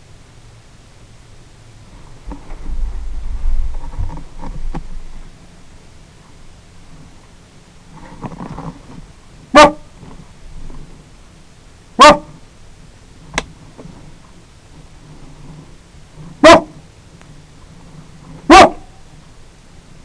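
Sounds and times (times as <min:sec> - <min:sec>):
dog barking: 0:09.5 - 0:09.9, 0:12.0 - 0:12.4, 0:16.4 - 0:16.8, 0:18.5 - 0:18.9.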